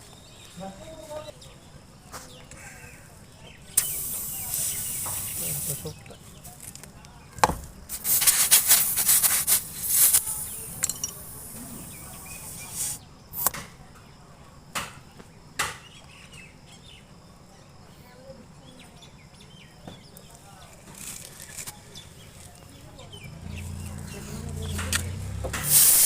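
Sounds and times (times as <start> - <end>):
sharp clicks: 3.8 - 5.4
tool knocking on tyre: 7.4 - 7.8
rapid scraping strokes: 7.9 - 10.8, 25.6 - 26.0.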